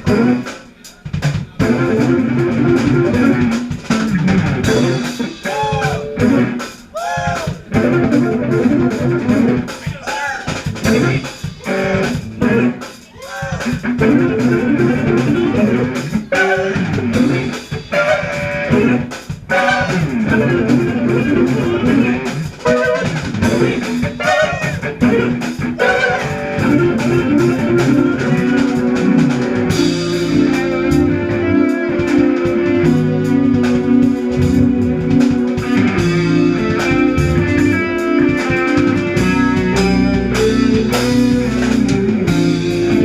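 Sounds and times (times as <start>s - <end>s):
bass guitar: 0.0s - 43.0s
drum kit: 0.0s - 43.0s
jazz fusion band playing: 0.0s - 43.0s
electric guitar lines: 1.6s - 6.8s, 7.7s - 9.8s, 10.7s - 12.9s, 13.7s - 43.0s.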